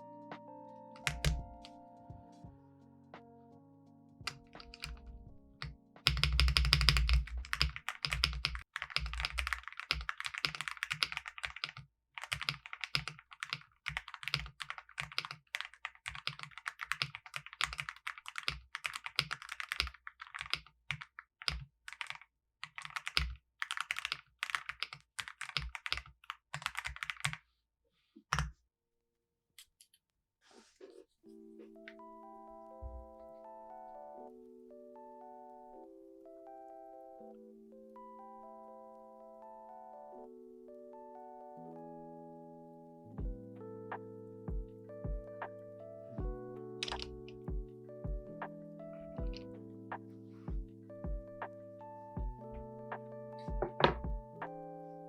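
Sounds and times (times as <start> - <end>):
typing on mechanical keyboard: 1.0 - 1.7, 4.3 - 5.0, 5.6 - 27.4, 46.8 - 47.4.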